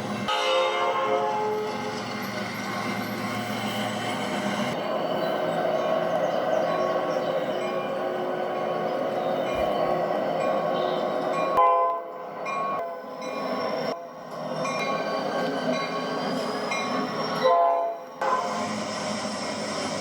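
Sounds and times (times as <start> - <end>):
train wheels and rumble: 0.0 - 20.0
train air horn blasts: 0.3 - 1.7, 11.6 - 12.1, 17.4 - 18.7.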